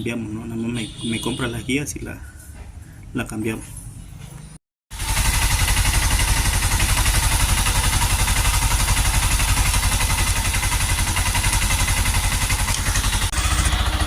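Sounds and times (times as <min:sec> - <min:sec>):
motorcycle engine idling: 0:04.9 - 0:14.0.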